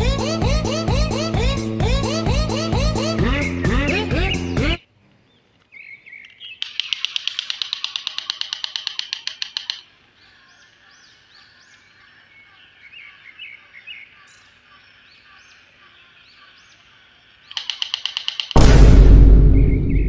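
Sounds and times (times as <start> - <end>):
birds calling and chirping: 0.0 - 18.6, 19.5 - 20.0
loud rapid pulsing rattle: 17.5 - 20.0.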